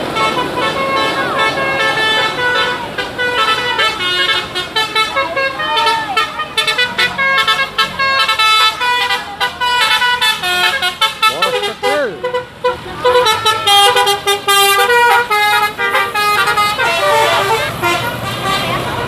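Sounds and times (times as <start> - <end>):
musical air horns playing a tune: 0.0 - 19.0.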